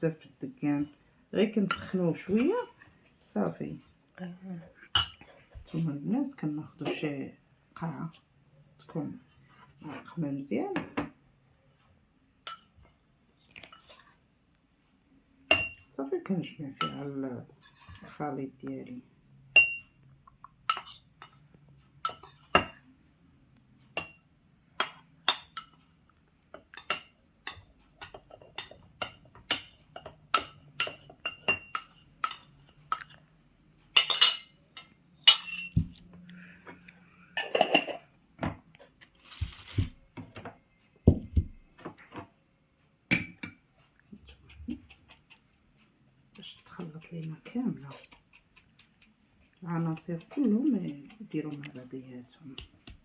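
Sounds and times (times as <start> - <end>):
metal spoon clinking against a jar: 34.0 - 35.8.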